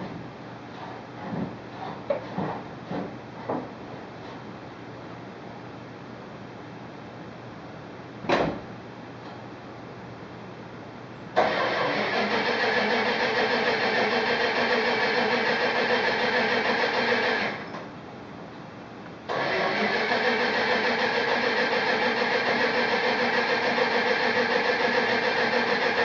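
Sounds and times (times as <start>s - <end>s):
car engine cranking on starter: 11.4s - 17.7s, 19.3s - 26.0s
engine running: 19.3s - 26.0s.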